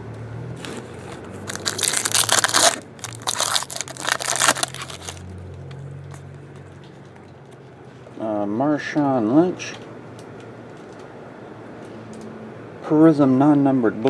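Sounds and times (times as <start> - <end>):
foil wrapper crinkling: 0.6 - 5.3.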